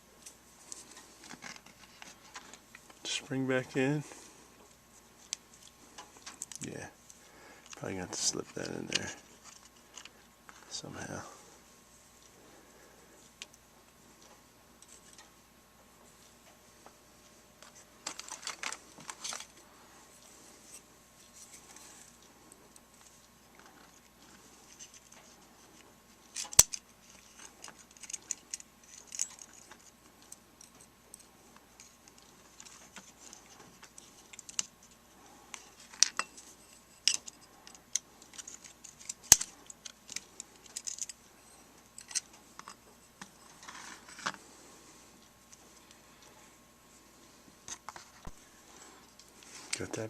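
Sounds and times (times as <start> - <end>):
plastic parts clicking and rattling: 17.6 - 19.6, 26.2 - 31.2, 31.8 - 41.2, 41.8 - 44.4.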